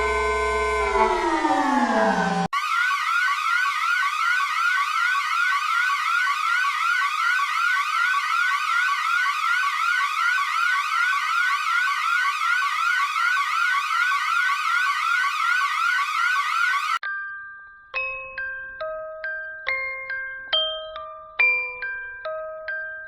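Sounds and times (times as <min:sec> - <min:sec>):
electronic alarm rising sweep: 0:00.0 - 0:02.5.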